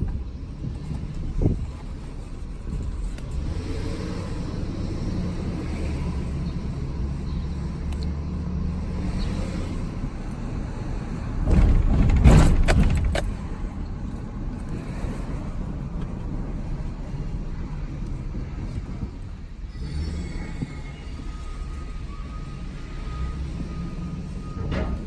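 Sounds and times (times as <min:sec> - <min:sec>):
truck road rumble: 0:00.0 - 0:25.0
rattling and knocking: 0:11.3 - 0:13.6.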